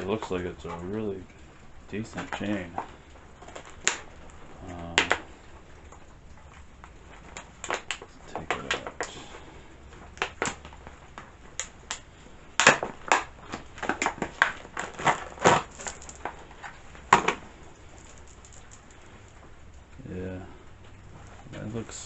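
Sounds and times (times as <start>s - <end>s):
chainsaw chain clicking and rattling: 14.8s - 16.8s, 17.6s - 19.4s.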